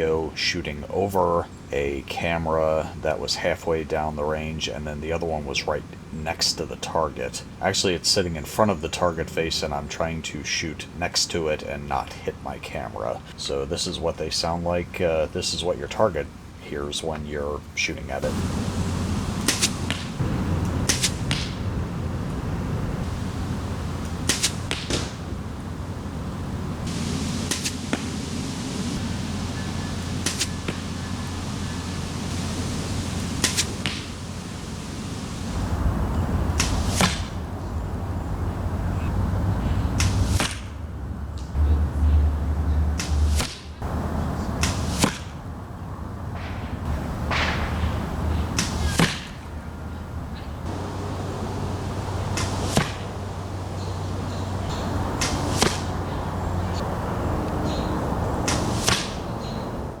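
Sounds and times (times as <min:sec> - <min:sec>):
steady low rumble: 0:11.3 - 0:45.0
arrows hissing past: 0:18.2 - 0:37.6, 0:39.9 - 0:40.8, 0:42.9 - 0:45.4, 0:46.4 - 0:49.5, 0:50.7 - 0:56.8, 0:58.4 - 0:59.5.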